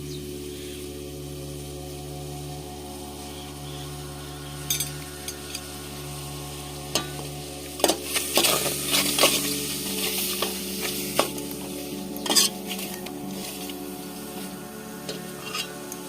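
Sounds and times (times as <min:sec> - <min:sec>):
oil sizzling: 0:00.0 - 0:16.0
spatula scraping metal pan: 0:07.8 - 0:11.4, 0:12.2 - 0:13.7, 0:15.1 - 0:15.8.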